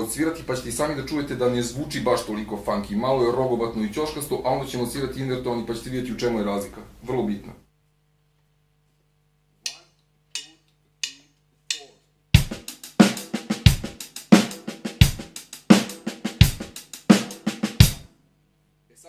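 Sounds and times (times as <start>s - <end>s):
drumstick count-in clicks: 9.6s - 12.1s
drum kit groove: 9.7s - 18.1s.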